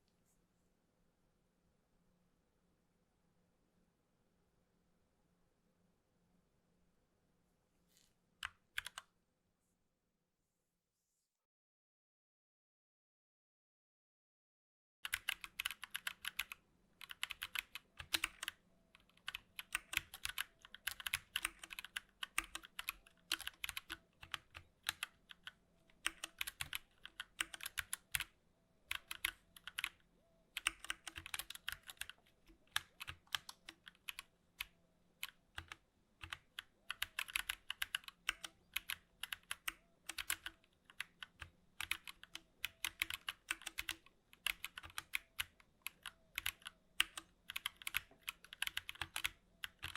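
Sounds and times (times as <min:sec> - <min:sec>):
fast mechanical keyboard typing: 0:15.0 - 0:28.3, 0:28.9 - 0:30.0, 0:30.6 - 0:49.9.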